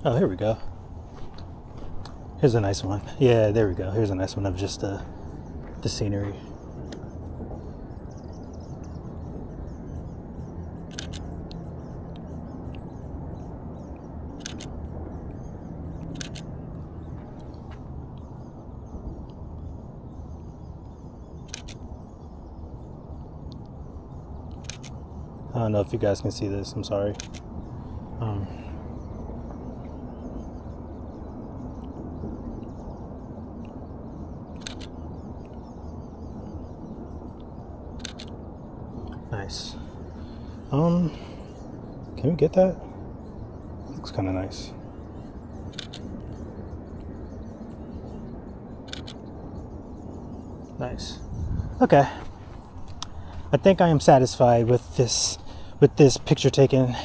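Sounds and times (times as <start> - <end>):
steady low rumble: 0.0 - 57.0
camera shutter double click: 10.9 - 11.3, 14.4 - 14.7, 16.1 - 16.5, 21.5 - 21.8, 24.6 - 25.0, 34.6 - 34.9, 38.0 - 38.3, 45.7 - 46.0, 48.9 - 49.2.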